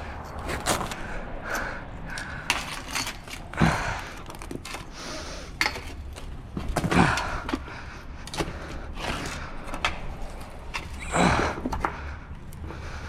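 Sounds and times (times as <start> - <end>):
heavy breathing: 0.0 - 5.8, 6.8 - 13.0
footsteps on loose rocks: 0.3 - 1.1.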